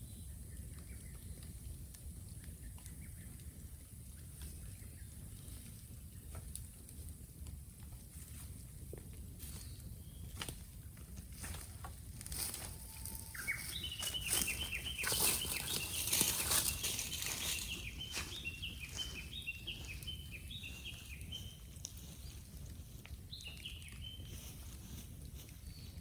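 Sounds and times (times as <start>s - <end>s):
bonfire crackling and popping: 0.1s - 26.0s
bird chirping: 12.4s - 22.4s, 23.2s - 24.5s.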